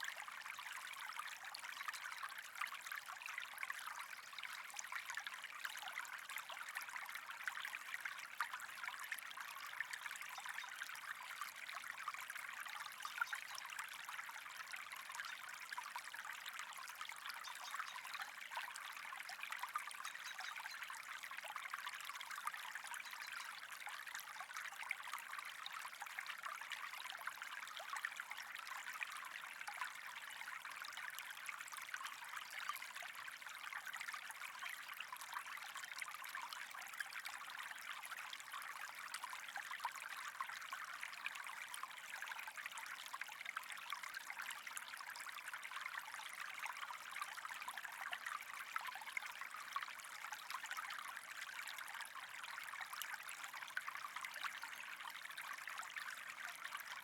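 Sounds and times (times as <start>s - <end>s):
running water trickling: 0.3s - 35.2s.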